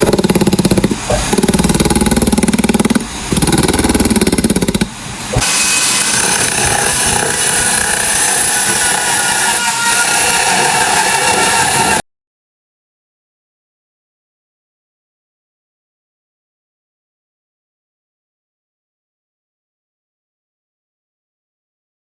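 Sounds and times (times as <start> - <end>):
power tools cutting wood: 0.0 - 12.0.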